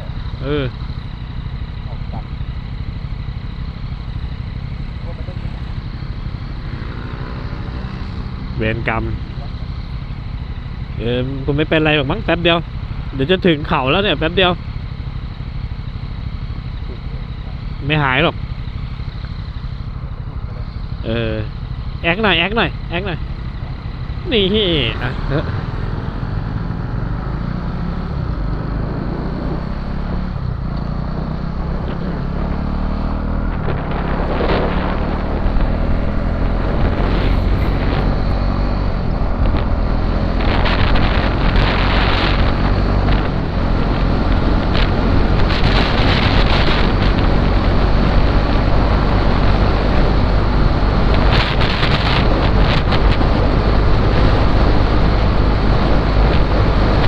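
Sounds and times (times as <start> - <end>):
motorcycle engine running: 0.0 - 57.0
wind buffeting microphone: 33.2 - 57.0.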